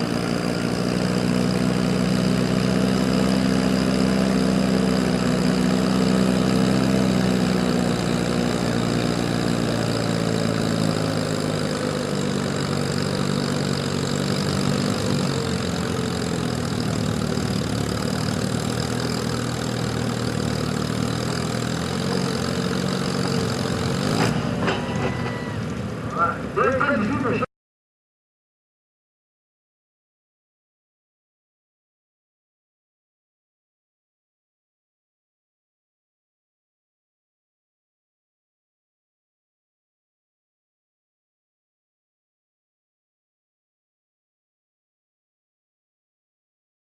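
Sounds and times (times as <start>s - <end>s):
diesel tractor engine running: 0.0s - 27.5s.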